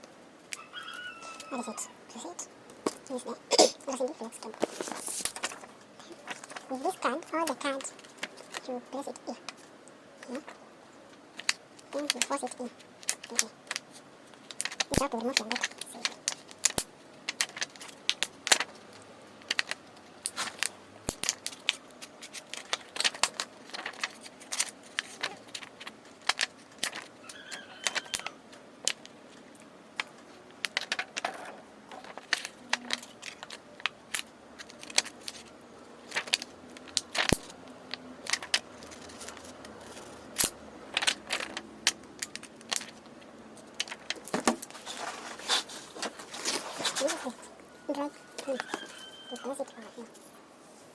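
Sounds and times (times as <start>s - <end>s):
hand tools clicking and scraping: 11.4s - 50.3s.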